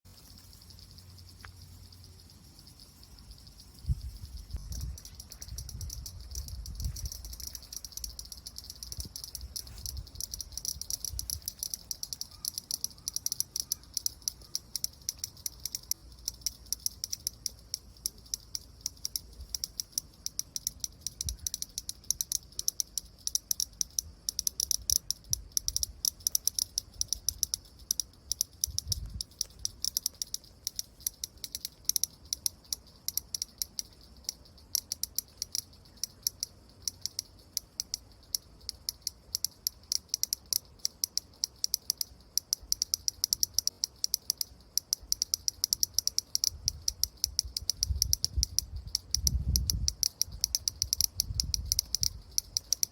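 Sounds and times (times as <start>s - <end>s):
cicada clicking and rattling: 0.1s - 52.9s.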